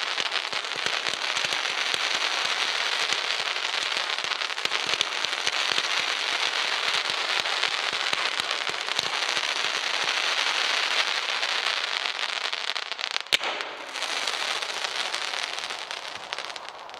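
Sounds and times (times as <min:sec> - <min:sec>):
firework crackling: 0:00.0 - 0:16.9.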